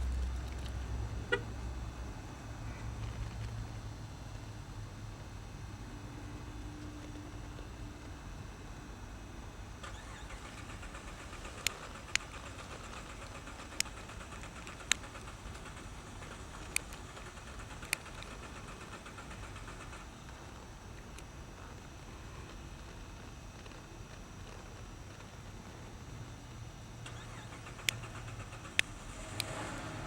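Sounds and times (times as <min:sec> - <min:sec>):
sharp clicks: 0:09.8 - 0:23.0, 0:27.0 - 0:29.6
car engine cranking: 0:09.8 - 0:24.8, 0:26.8 - 0:30.0.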